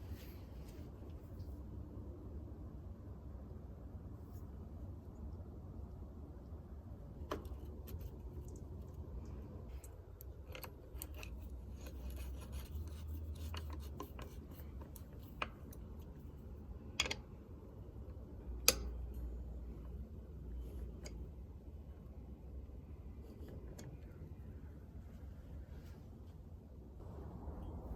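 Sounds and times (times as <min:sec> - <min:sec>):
low steady hum: 0:00.0 - 0:27.9
rubbing and scraping: 0:10.9 - 0:15.4.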